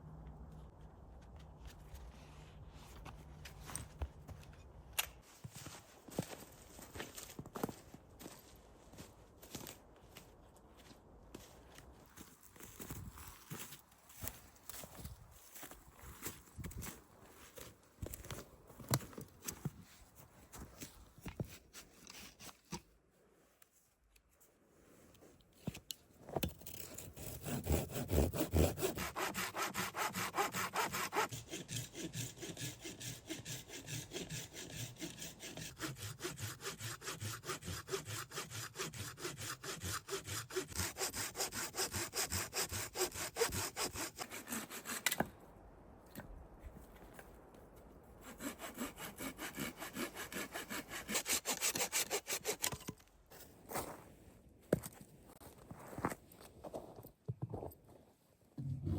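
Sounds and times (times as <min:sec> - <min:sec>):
hand saw cutting wood: 0:26.6 - 0:45.3, 0:48.2 - 0:53.0.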